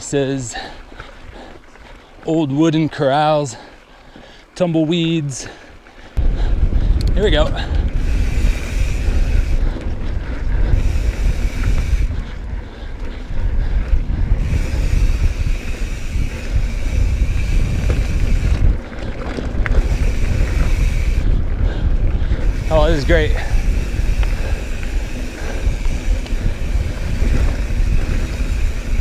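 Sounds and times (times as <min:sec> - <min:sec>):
wind buffeting microphone: 0:05.8 - 0:29.0
mountain bike rumbling on dirt trail: 0:06.1 - 0:29.0.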